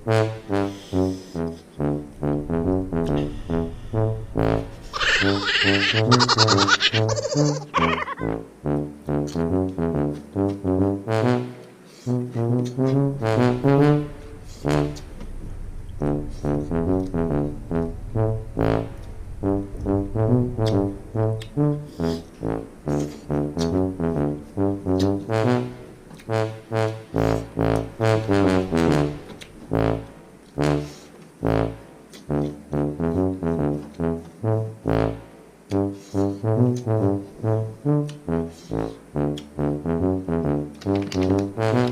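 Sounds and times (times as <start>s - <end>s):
brass-like melody over bass line: 0.0s - 41.9s
low bass line: 1.8s - 5.0s, 12.7s - 30.2s.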